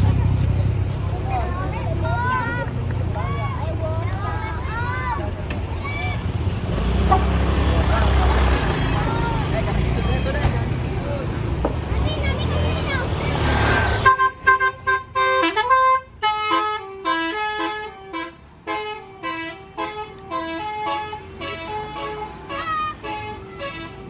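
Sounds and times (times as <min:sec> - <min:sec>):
musical air horn melody: 0:14.0 - 0:24.0.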